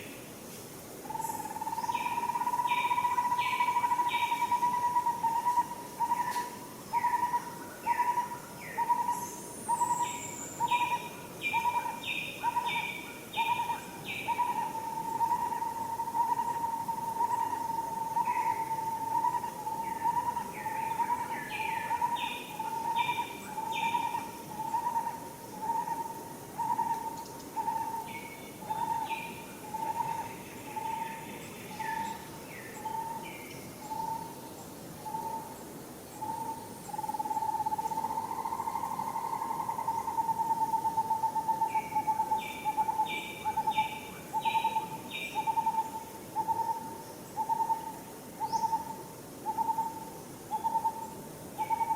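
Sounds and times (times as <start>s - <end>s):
bird hooting: 9.8s - 31.2s, 35.0s - 35.5s, 36.2s - 51.9s.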